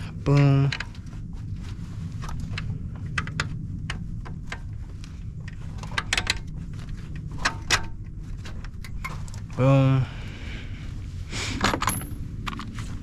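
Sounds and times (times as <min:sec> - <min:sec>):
low hum: 0:00.0 - 0:13.0.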